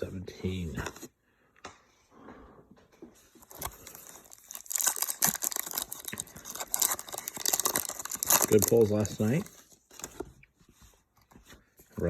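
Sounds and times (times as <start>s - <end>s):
plastic foil wrapper crinkling: 3.4s - 10.2s.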